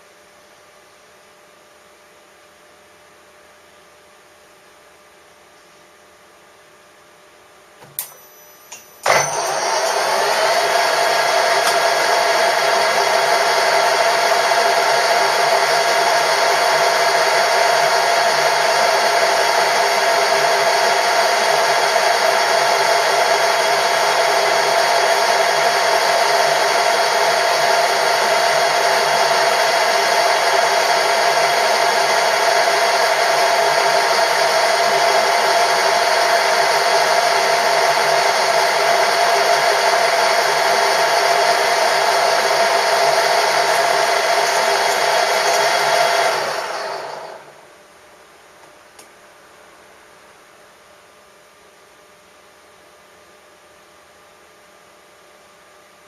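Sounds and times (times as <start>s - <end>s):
power tool humming: 7.8s - 47.6s.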